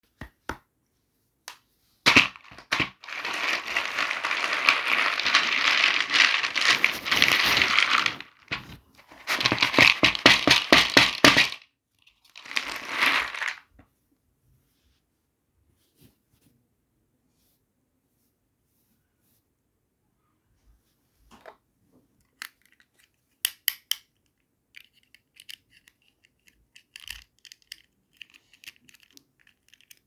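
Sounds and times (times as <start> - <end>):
plastic packaging crinkling: 2.1 - 11.6, 12.3 - 13.6.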